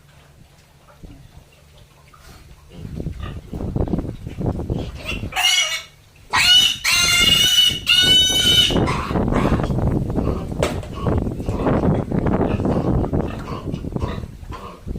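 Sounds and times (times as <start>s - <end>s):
pig squealing: 4.8s - 11.8s.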